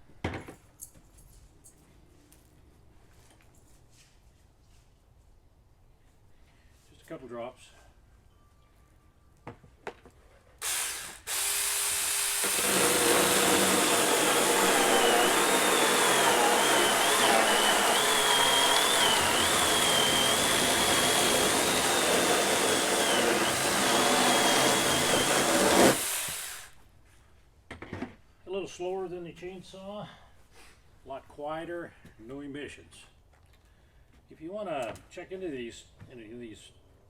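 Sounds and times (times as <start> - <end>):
small chainsaw cutting hardwood: 10.6 - 26.8.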